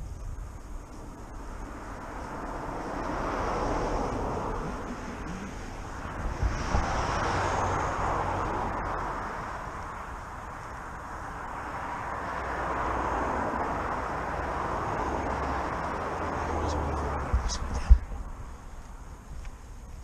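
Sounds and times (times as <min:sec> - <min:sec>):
wind buffeting microphone: 0:00.0 - 0:10.0
vehicles passing: 0:00.0 - 0:20.0.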